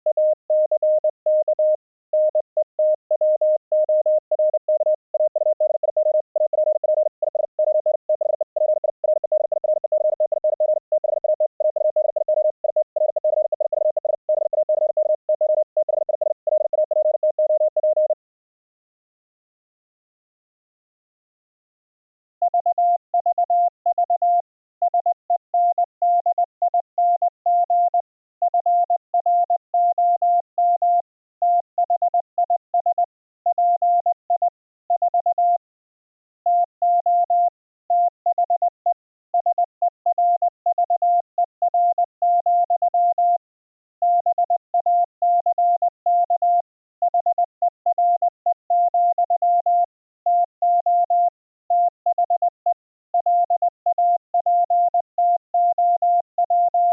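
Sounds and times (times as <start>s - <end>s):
morse code tone: 0.0s - 18.2s.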